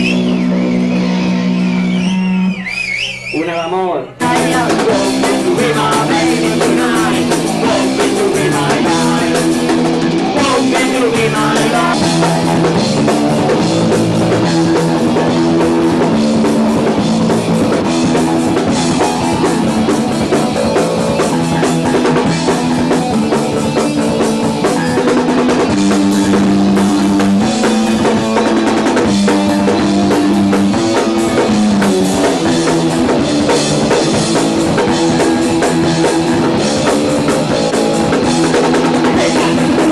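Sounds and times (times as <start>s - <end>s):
rock band playing live: 0.0s - 3.3s, 4.2s - 39.9s.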